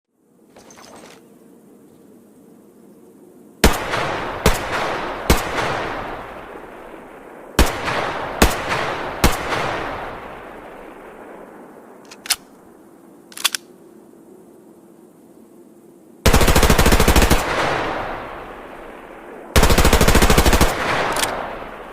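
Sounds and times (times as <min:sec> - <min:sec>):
gunshots with long echo: 0:03.6 - 0:12.4, 0:16.2 - 0:21.9
faint clicks: 0:12.0 - 0:12.6, 0:13.2 - 0:13.7, 0:21.0 - 0:21.4.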